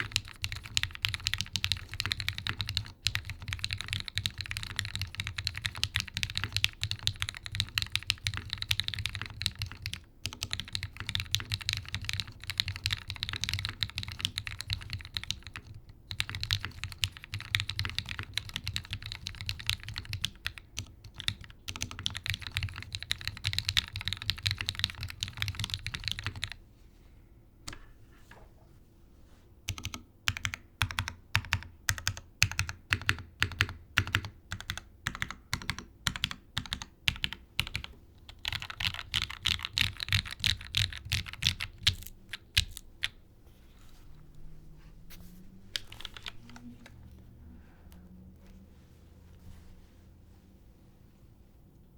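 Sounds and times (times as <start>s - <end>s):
mechanical keyboard typing: 0.0s - 26.6s, 29.7s - 43.2s, 45.7s - 47.2s.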